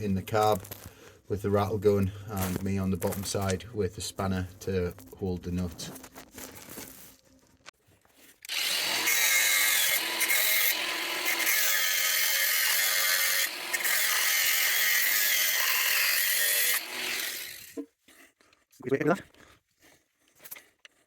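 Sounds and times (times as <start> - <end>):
power tool running under load: 8.5 - 17.7.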